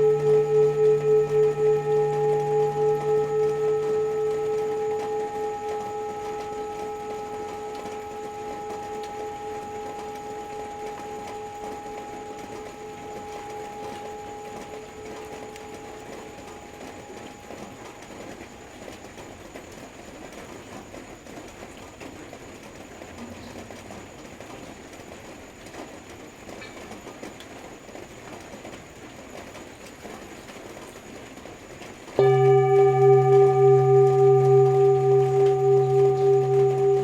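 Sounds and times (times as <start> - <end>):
singing bowl ringing: 0.0 - 19.2, 32.2 - 37.0.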